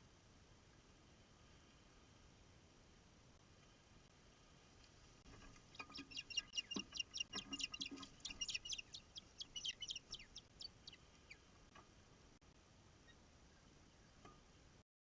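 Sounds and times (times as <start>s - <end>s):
bird sharp high chirps: 5.7s - 11.4s.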